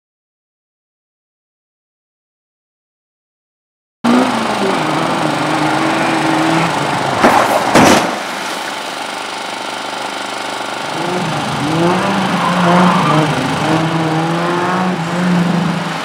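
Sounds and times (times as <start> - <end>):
race car engine: 4.0 - 16.0
loud bursts of noise: 4.1 - 16.0.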